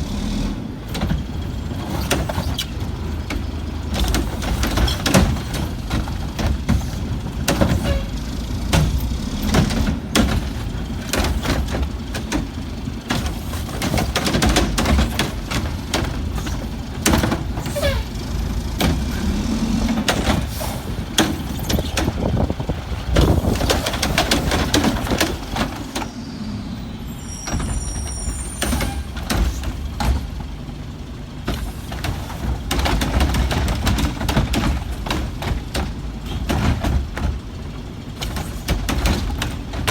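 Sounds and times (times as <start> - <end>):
garbage truck diesel engine rumbling: 0.0 - 39.9
high-pitched squeal: 26.0 - 29.2.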